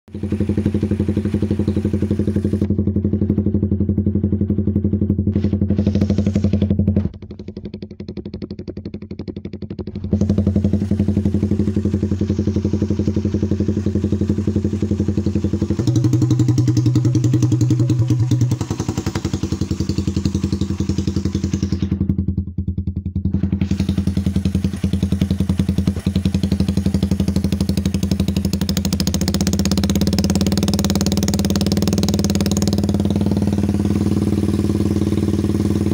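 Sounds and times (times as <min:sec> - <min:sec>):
motorcycle idling: 0:00.1 - 0:35.9.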